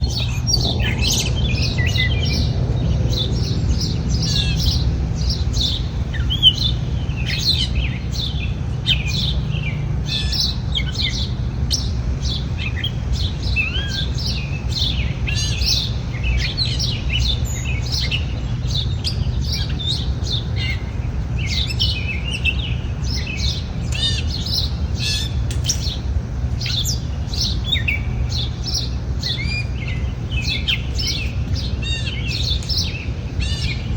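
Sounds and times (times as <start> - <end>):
low rumble: 0.0 - 7.1
small birds chirping: 0.0 - 33.9.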